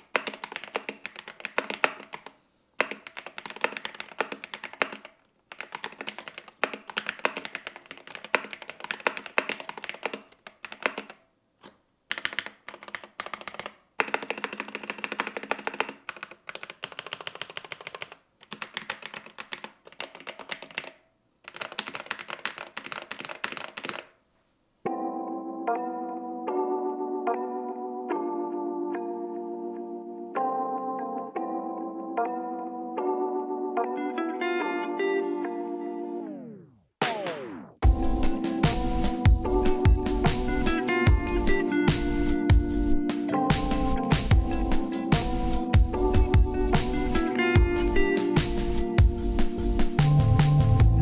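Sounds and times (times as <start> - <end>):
fast keyboard typing: 0.0 - 11.2, 12.1 - 24.2, 38.4 - 42.7, 43.5 - 51.0
music: 24.9 - 51.0.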